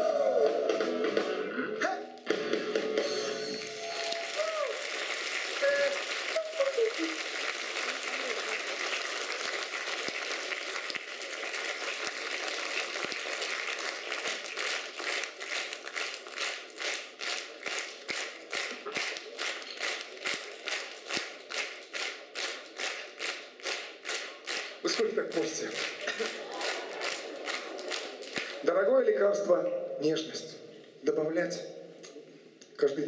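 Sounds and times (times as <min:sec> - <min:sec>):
audience applauding: 0:03.4 - 0:28.7
rhythmic clapping in unison: 0:03.6 - 0:28.7.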